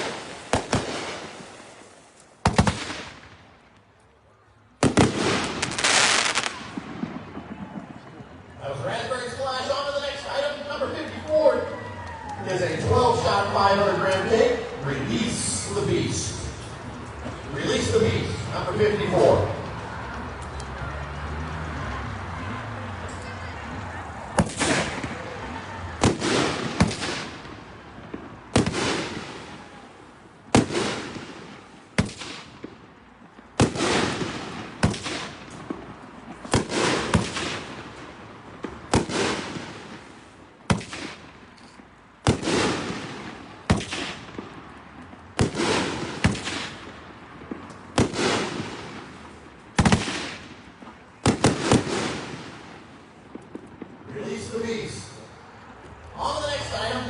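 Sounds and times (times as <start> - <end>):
fireworks bangs: 0.0 - 3.9, 4.7 - 55.2.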